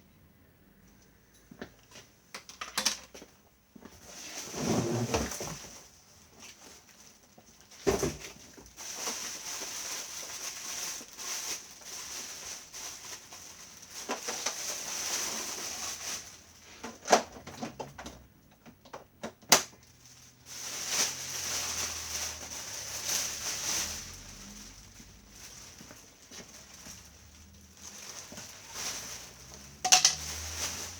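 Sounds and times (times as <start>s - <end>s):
packaging rustling: 4.1s - 17.1s, 20.0s - 30.9s.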